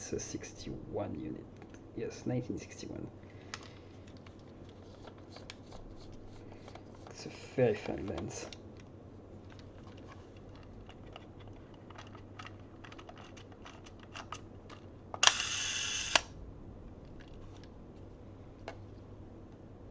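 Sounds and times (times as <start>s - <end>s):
camera handling clicks: 15.2s - 16.3s
camera shutter firing: 15.2s - 16.3s
shutter escapement whirring: 15.2s - 16.4s.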